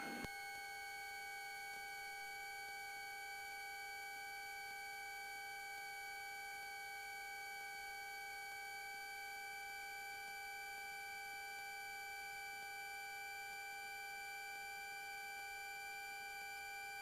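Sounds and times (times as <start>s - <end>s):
faint electrical whine: 0.0s - 0.4s.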